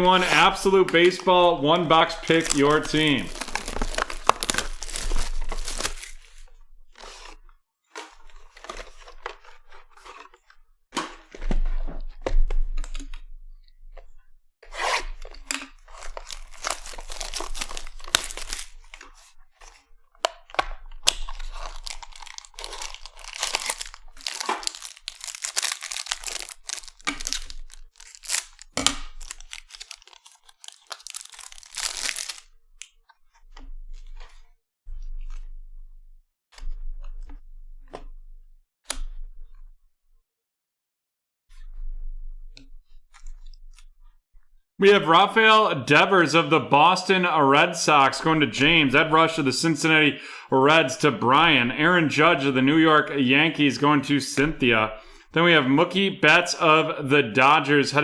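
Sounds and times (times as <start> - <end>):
card pack wrappers tearing: 1.9 - 6.4, 15.9 - 19.0, 21.1 - 32.5.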